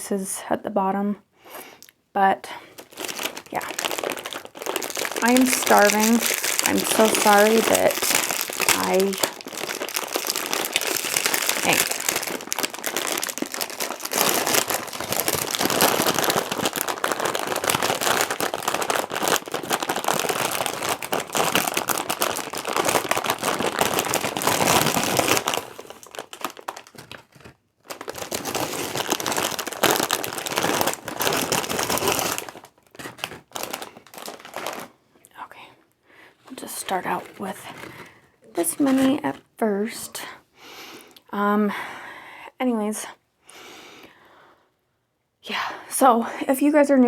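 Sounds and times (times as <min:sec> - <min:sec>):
packaging crinkling and rustling: 0:02.6 - 0:35.0, 0:36.5 - 0:39.5.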